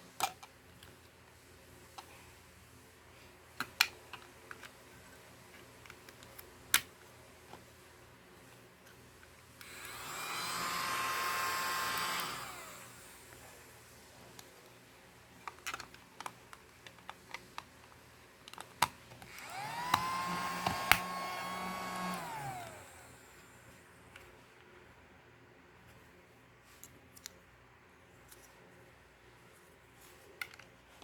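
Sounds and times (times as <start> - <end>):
mini vacuum cleaner motor whining: 9.6 - 13.4, 19.3 - 23.6.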